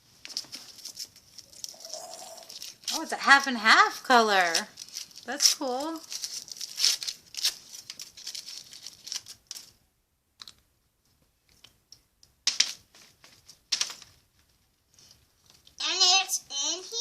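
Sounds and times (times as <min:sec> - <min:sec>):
plastic capsule crackling and clicking: 0:10.4 - 0:10.6.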